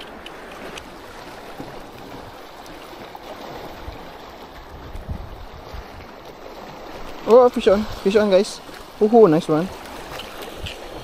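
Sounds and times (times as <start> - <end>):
water lapping and sloshing: 0.0 - 11.0
strong wind buffeting microphone: 3.6 - 6.2.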